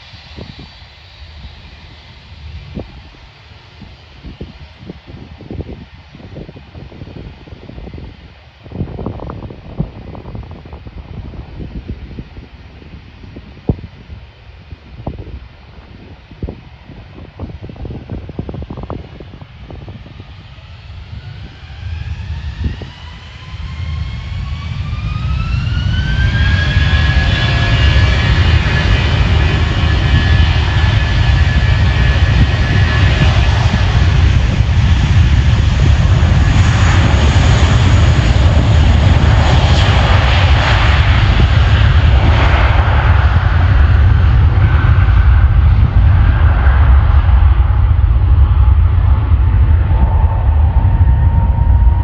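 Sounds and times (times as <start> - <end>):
jet engines spooling up: 15.0 - 52.0.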